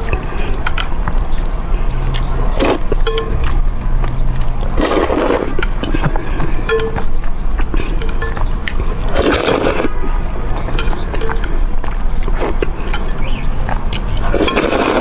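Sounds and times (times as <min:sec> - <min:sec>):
noodle slurps: 0:00.0 - 0:03.2, 0:04.5 - 0:06.6, 0:07.6 - 0:10.1, 0:12.2 - 0:13.0, 0:13.9 - 0:15.0
mouth clicks and chewing: 0:00.0 - 0:15.0.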